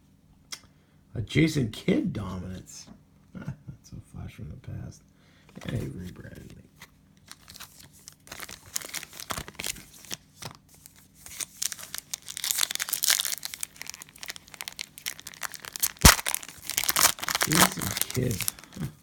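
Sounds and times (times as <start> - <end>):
cellophane crinkling and tearing: 7.2 - 19.0.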